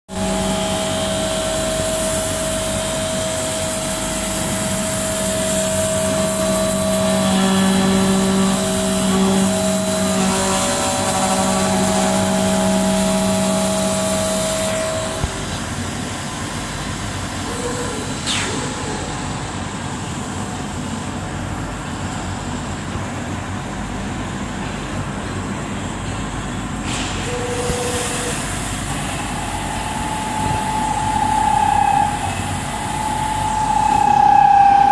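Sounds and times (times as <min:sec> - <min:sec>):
held humming tones: 0:00.1 - 0:15.8, 0:27.3 - 0:34.9
machine noise: 0:00.1 - 0:22.8, 0:24.6 - 0:34.9.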